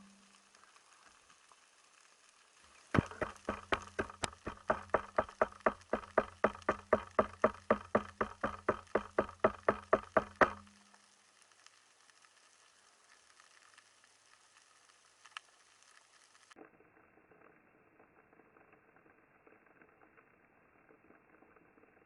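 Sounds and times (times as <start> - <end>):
regular mechanical clicking: 2.9 - 11.0.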